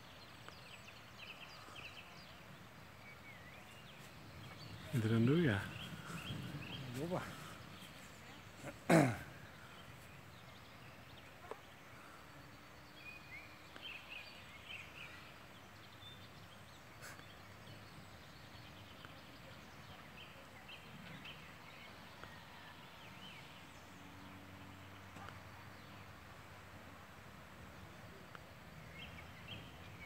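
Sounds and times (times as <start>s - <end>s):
faint outdoor background noise: 0.0s - 30.0s.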